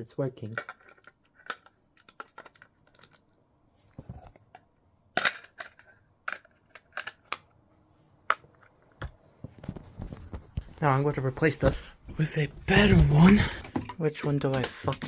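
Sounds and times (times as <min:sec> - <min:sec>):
plastic clicks and snaps: 0:05.2 - 0:07.6.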